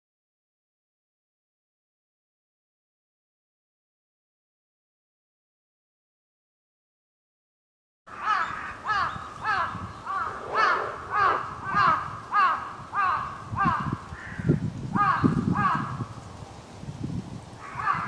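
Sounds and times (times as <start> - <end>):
crows cawing: 8.1 - 16.0, 17.6 - 18.0
low rumble: 9.4 - 12.3.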